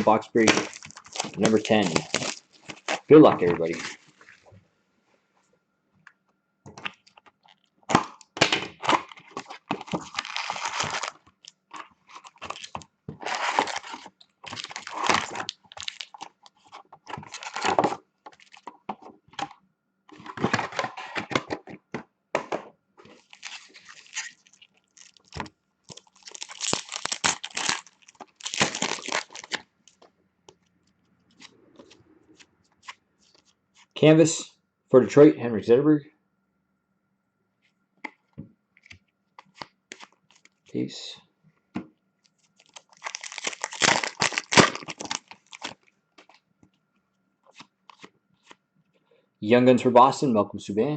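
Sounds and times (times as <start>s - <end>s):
packaging tearing and crinkling: 0.0s - 4.1s, 8.8s - 18.7s, 23.1s - 29.6s, 39.5s - 40.6s, 42.5s - 45.9s.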